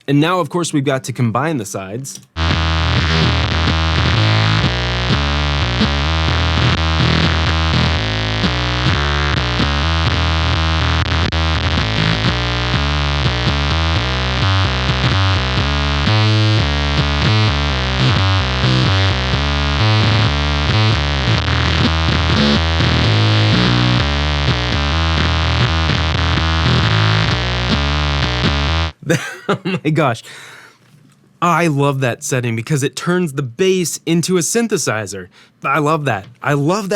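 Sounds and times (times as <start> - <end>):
fuzz bass guitar line: 2.3 - 29.2.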